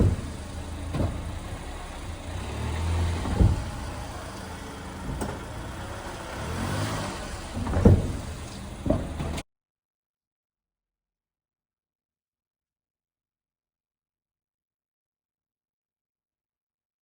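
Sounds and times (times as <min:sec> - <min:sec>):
car running noise: 0:00.0 - 0:09.4
heavy clunks over bumps: 0:00.0 - 0:09.4.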